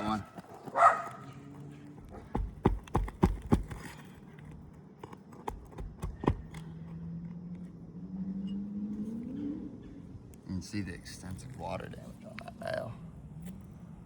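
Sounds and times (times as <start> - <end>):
tool knocking on nails: 5.4 - 6.6.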